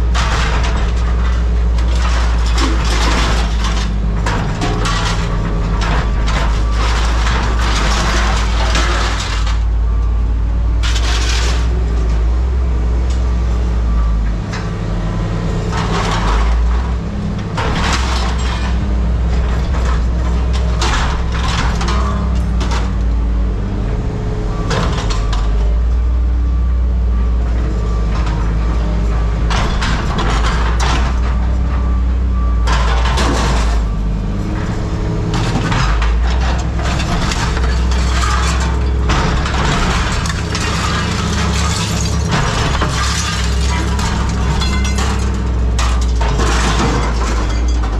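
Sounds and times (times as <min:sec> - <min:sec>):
loud clatter: 0:00.0 - 0:09.7, 0:15.7 - 0:23.0, 0:29.1 - 0:31.5, 0:32.4 - 0:34.0, 0:35.3 - 0:47.9
diesel machinery droning: 0:00.0 - 0:47.9.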